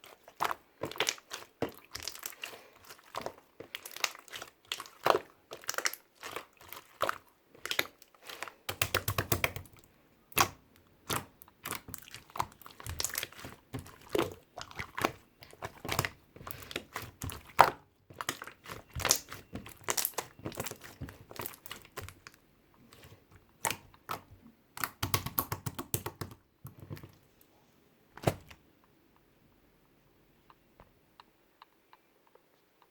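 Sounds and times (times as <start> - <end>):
crisp crinkling and crackling: 0.0 - 24.3.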